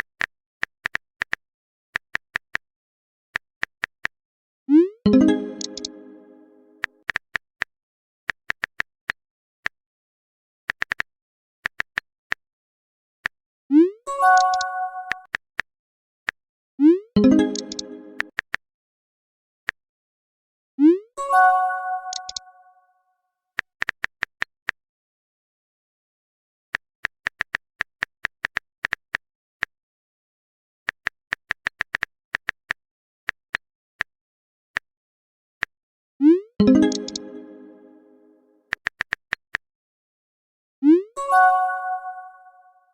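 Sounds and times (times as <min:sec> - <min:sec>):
sharp ticking clicks: 0:22.1 - 0:22.4, 0:36.7 - 0:37.4.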